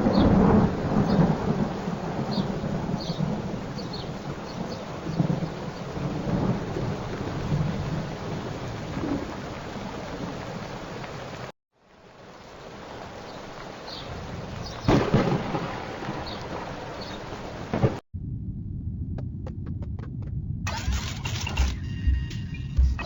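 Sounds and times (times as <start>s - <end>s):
loud thunder burst: 0.0s - 10.3s, 14.1s - 18.4s
thunder rumbling: 0.0s - 11.5s, 12.1s - 21.7s
steady rain: 0.0s - 18.0s.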